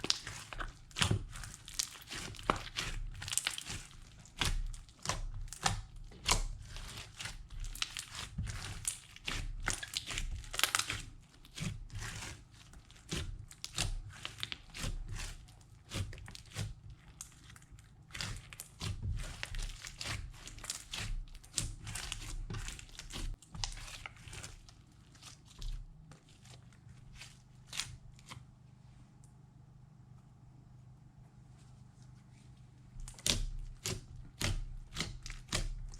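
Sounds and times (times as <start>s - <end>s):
slime crackling and crunching: 0.0s - 28.5s, 32.9s - 35.9s.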